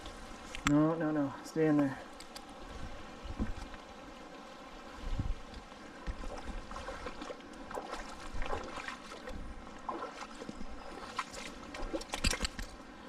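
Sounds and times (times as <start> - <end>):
river water running: 0.0 - 13.0
clicks and splashes: 6.1 - 12.8.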